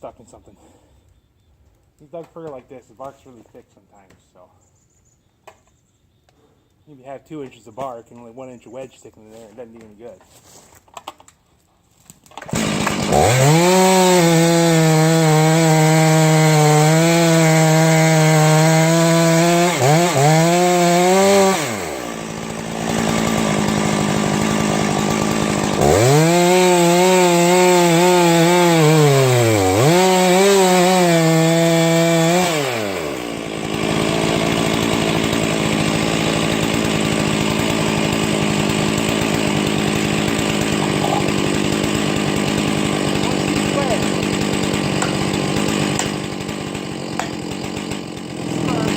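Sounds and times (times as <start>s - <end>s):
chainsaw cutting wood: 12.2s - 48.9s.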